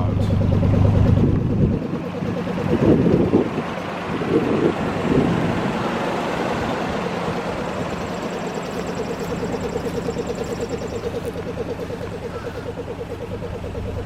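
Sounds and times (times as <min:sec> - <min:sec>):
motor humming with fast pulse: 0:04.2 - 0:14.0.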